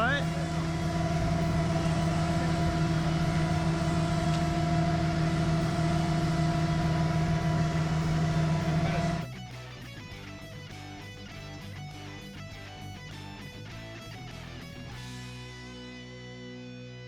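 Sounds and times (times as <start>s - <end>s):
large engine humming: 0.0s - 9.3s.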